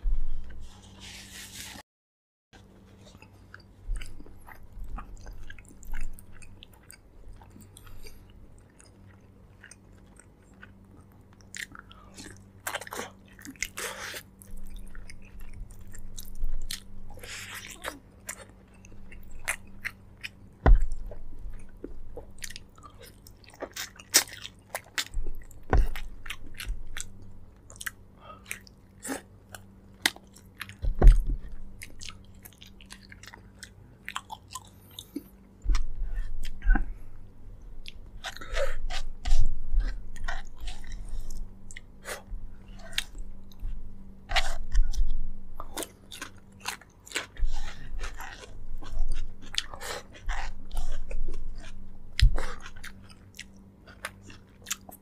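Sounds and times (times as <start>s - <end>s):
close chewing and biting: 2.9s - 37.1s, 37.8s - 55.0s
low thumps: 30.8s - 31.6s.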